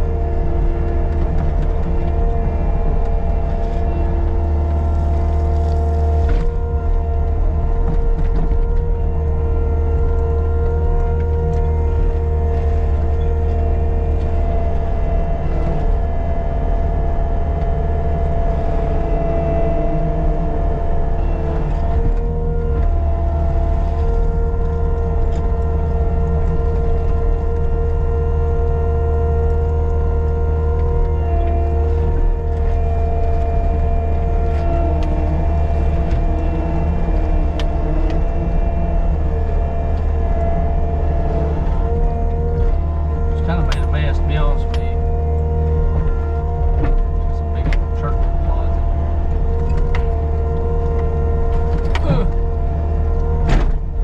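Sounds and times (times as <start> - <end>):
diesel engine droning with whine: 0.0 - 54.0.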